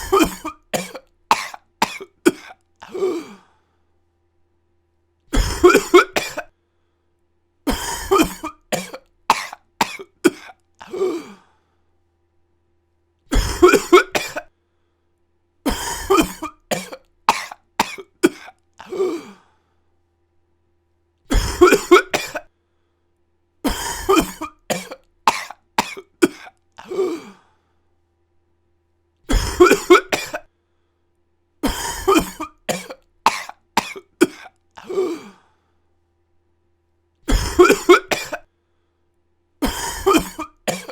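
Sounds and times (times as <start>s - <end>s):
person coughing: 0.0s - 3.5s, 5.3s - 6.5s, 7.7s - 11.5s, 13.3s - 14.5s, 15.7s - 19.5s, 21.3s - 22.5s, 23.7s - 27.4s, 29.3s - 30.5s, 31.6s - 35.4s, 37.3s - 38.5s, 39.6s - 40.9s.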